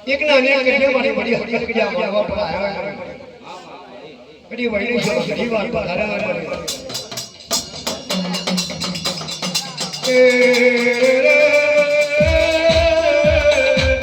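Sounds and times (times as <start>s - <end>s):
percussion strokes: 5.0s - 14.0s
deep bass drum beats: 6.2s - 14.0s
sustained melody line: 10.1s - 14.0s.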